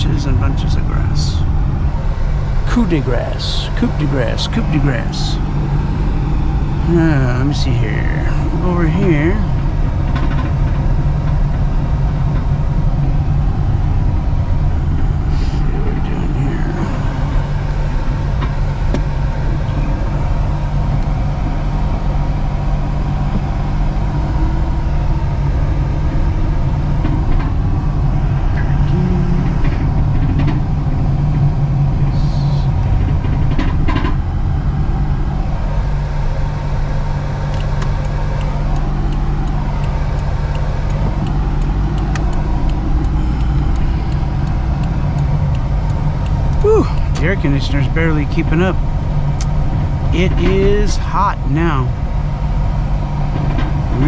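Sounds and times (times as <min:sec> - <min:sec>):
car engine and road noise: 0:00.0 - 0:54.0
faint ticks and clicks: 0:37.5 - 0:47.3.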